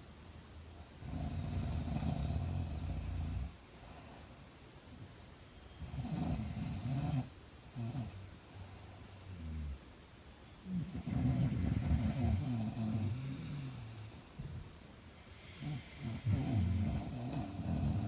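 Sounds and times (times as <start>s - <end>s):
woman snoring: 10.7s - 14.1s, 15.4s - 18.0s.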